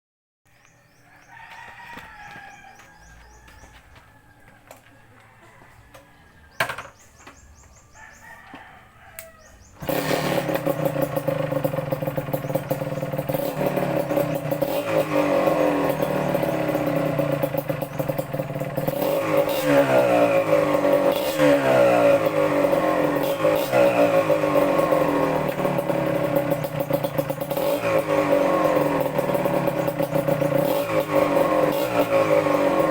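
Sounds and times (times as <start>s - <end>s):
two-stroke engine idling and revving: 9.6s - 32.9s.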